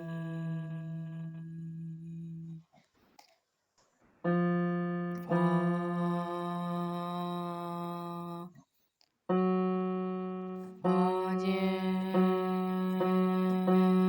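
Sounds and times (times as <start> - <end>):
electric piano notes: 4.2 - 8.2, 9.3 - 14.0.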